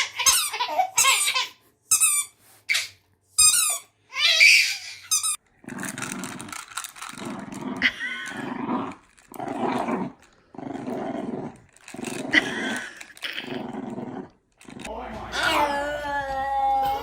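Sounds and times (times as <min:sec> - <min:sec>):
dog growling: 0:05.6 - 0:16.0.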